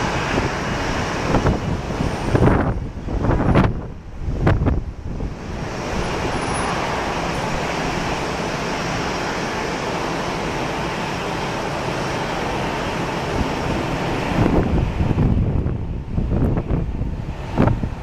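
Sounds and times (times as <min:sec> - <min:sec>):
jet engines roaring: 0:00.0 - 0:18.0.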